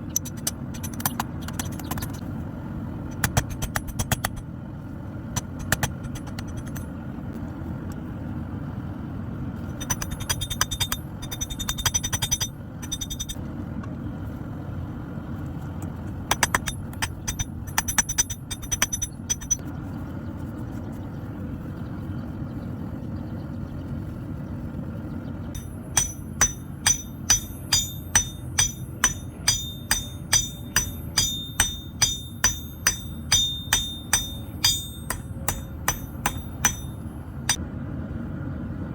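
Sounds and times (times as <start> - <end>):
hammer ringing on anvil: 9.8 - 13.4, 16.3 - 19.6, 25.6 - 37.6.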